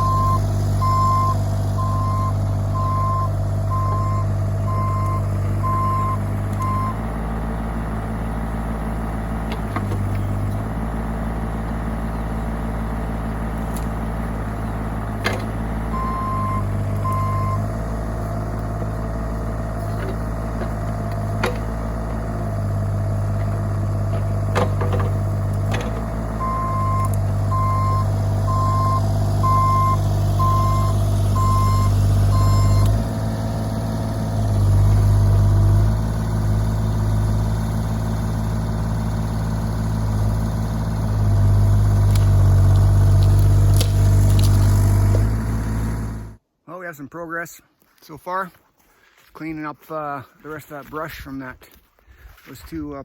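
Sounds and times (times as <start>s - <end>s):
travel alarm beeping: 0.0s - 7.0s, 15.9s - 17.6s, 26.4s - 32.9s
excavator diesel engine running: 0.0s - 46.4s.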